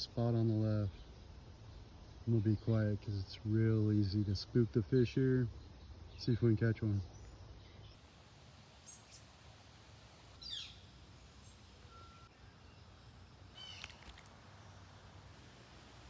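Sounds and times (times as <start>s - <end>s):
bird chirps: 10.4s - 14.8s
faint bird calls: 13.5s - 14.9s.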